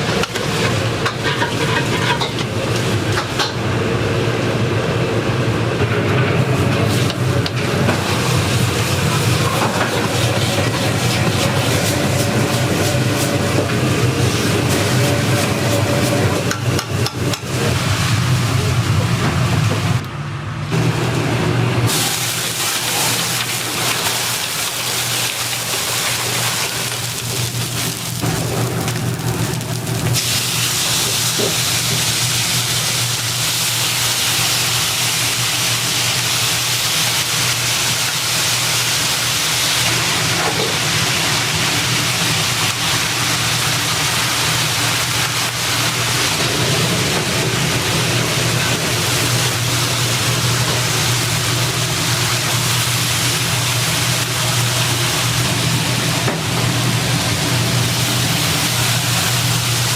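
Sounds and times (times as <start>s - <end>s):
food sizzling in a hot pan: 6.9s - 18.6s, 21.9s - 59.9s.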